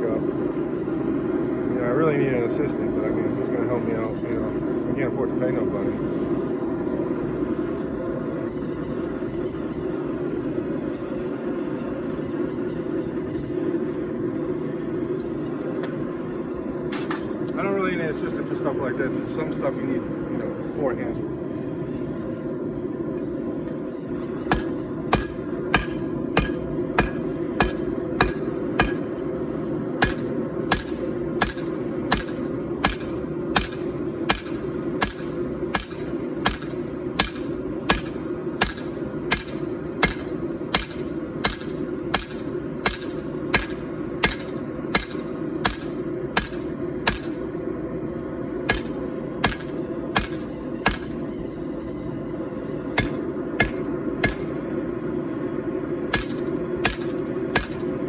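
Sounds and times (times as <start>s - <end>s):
steady rushing noise: 0.0s - 58.0s
hammer striking steel on anvil: 24.5s - 29.3s, 30.0s - 47.5s, 48.7s - 51.2s, 53.0s - 54.6s, 56.1s - 57.9s.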